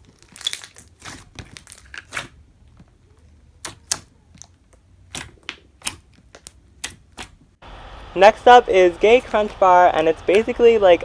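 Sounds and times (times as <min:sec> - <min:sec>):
slime clicking and popping: 0:03.6 - 0:07.3.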